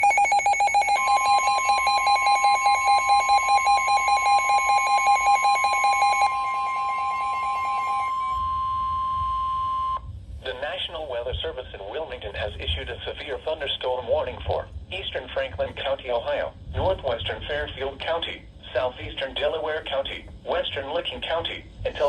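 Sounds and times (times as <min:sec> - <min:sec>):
rapid electronic beeping: 0:00.0 - 0:10.0
steady warning alarm tone: 0:00.0 - 0:10.1.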